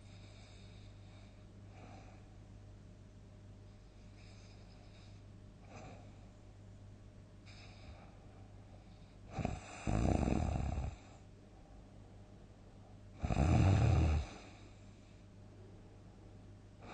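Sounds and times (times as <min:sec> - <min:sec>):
faint breathing: 0:00.0 - 0:02.5, 0:03.7 - 0:06.4, 0:07.4 - 0:11.9, 0:12.8 - 0:15.4
person snoring loudly: 0:09.4 - 0:11.0, 0:13.2 - 0:14.5.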